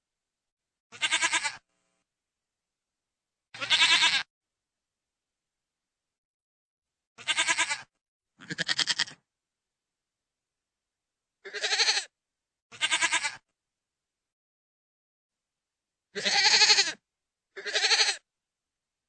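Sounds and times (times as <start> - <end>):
goat bleating: 0.9 - 1.6, 3.6 - 4.3, 7.2 - 9.2, 11.4 - 12.1, 12.7 - 13.4, 16.2 - 17.0, 17.6 - 18.2.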